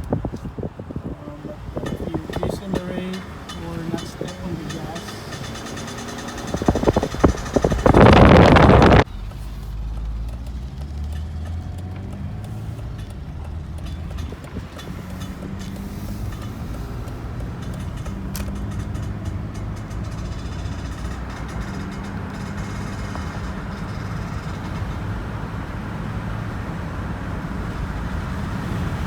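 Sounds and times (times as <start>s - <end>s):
engine and road rumble: 0.0s - 29.0s
loud rushing noise: 0.7s - 9.1s
loud irregular knocks: 1.5s - 9.1s, 9.9s - 25.2s
faint clicks: 1.5s - 25.0s.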